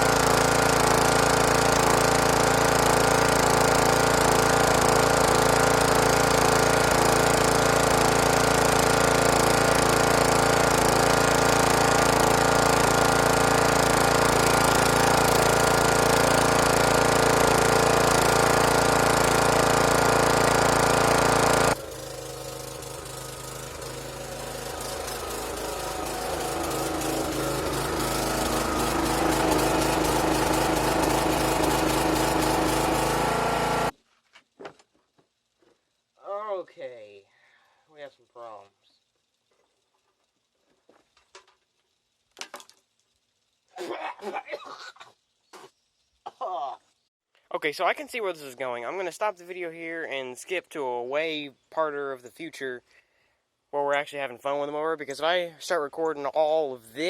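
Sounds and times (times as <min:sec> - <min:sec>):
lawn mower engine running: 0:00.0 - 0:34.0.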